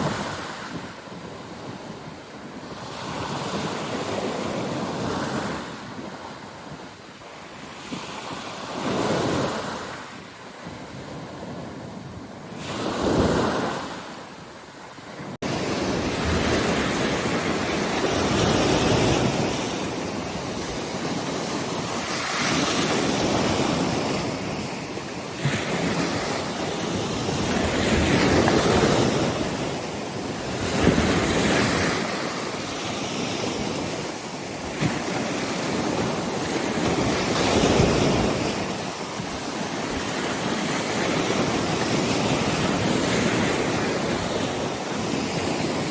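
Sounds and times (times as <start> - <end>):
waves breaking on shore: 0.0 - 45.9
wind noise on microphone: 0.0 - 45.9.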